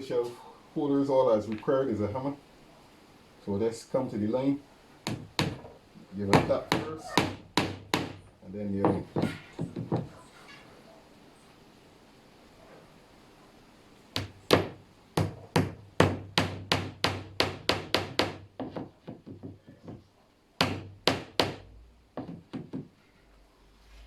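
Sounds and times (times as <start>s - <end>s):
hammer striking wood: 5.0s - 10.2s, 14.2s - 22.9s.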